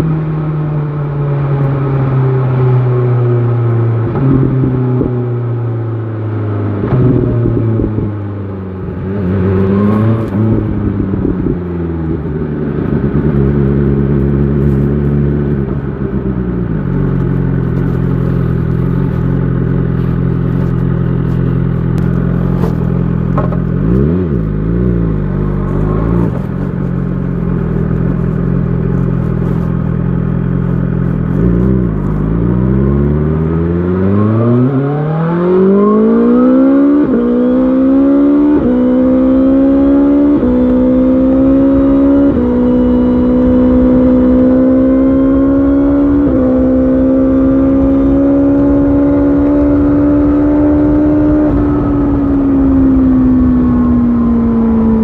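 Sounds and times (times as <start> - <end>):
motorcycle revving: 0.0 - 55.0
motorcycle engine idling: 12.0 - 32.2.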